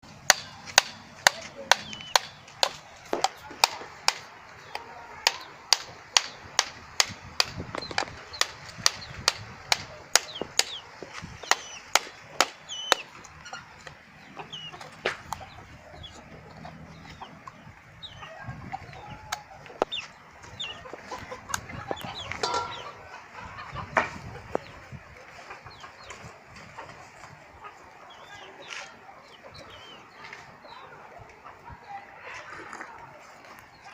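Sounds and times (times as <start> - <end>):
chickens clucking: 0.3 - 33.9
high chirping calls: 1.6 - 2.5, 10.1 - 24.8.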